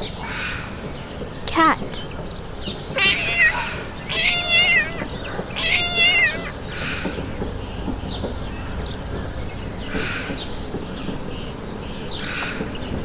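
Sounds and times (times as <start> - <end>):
cat meowing: 3.0 - 6.6.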